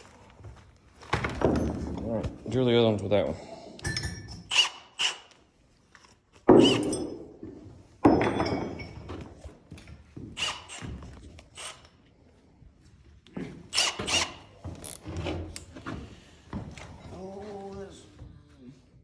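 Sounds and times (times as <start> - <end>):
tools thunking with ring: 3.8 - 4.5, 6.5 - 9.1.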